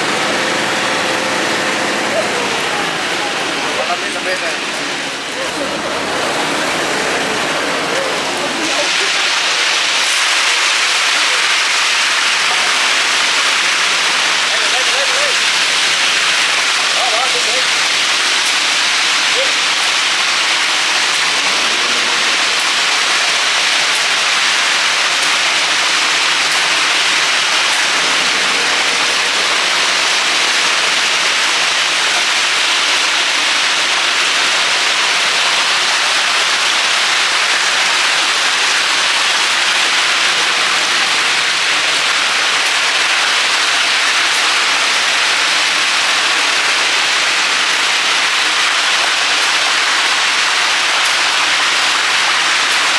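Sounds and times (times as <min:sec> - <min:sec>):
falling water hiss: 0:00.0 - 0:52.9.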